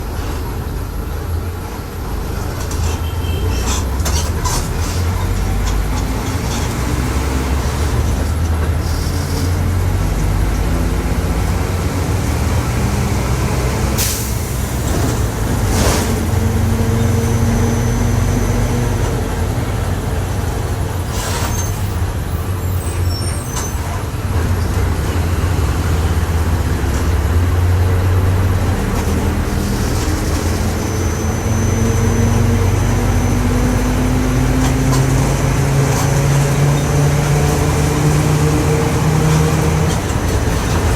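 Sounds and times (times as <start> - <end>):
diesel bus engine running: 0.0 - 40.9
differential whine: 29.6 - 36.9.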